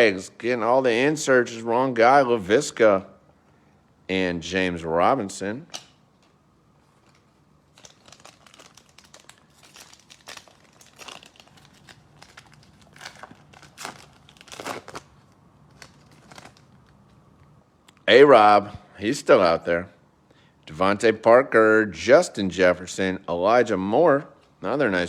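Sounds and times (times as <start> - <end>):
wrapper crinkling and rustling: 6.8 - 17.2.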